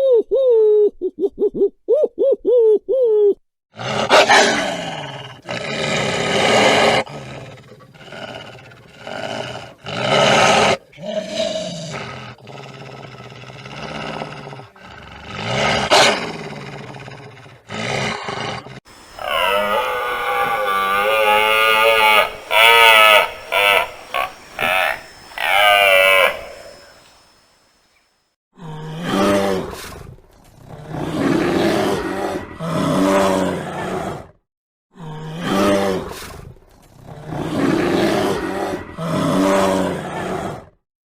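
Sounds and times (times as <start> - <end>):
big cat roaring and growling: 3.8 - 27.0, 28.6 - 34.4, 35.0 - 40.8
owl hooting: 18.9 - 27.4.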